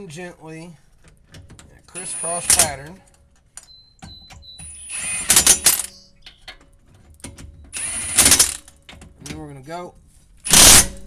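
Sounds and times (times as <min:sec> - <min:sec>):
impact gun whining: 0:01.9 - 0:03.0, 0:03.6 - 0:06.5, 0:07.4 - 0:08.8, 0:10.4 - 0:11.0.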